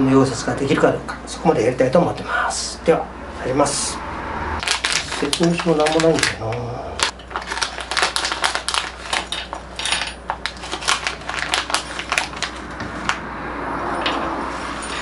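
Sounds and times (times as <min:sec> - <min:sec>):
packaging rustle: 0:04.6 - 0:13.2
parts clicking and crackling: 0:04.6 - 0:13.2.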